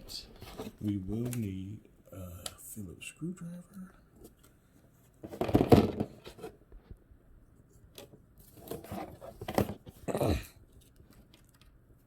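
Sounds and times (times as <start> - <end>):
handling scrapes and knocks: 8.4 - 10.0.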